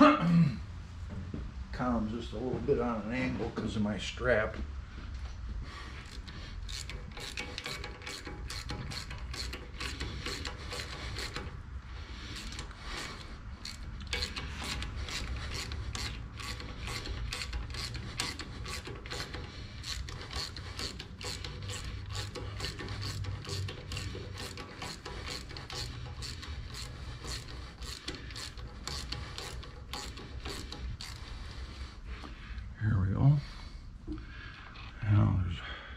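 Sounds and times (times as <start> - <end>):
ratchet clicking: 6.0 - 31.5.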